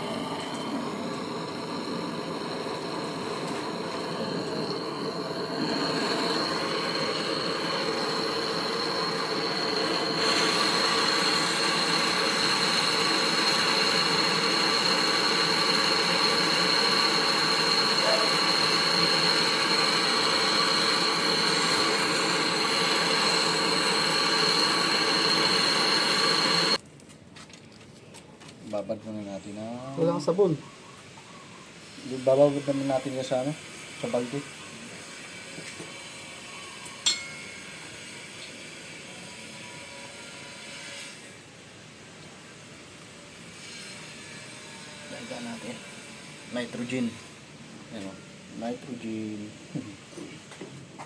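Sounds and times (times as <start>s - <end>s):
machine high-pitched whine: 0.0s - 26.8s, 32.0s - 41.3s.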